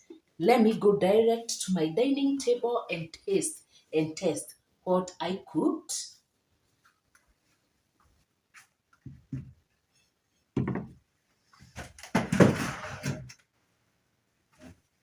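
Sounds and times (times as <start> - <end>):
dull thuds on table: 10.6 - 11.0.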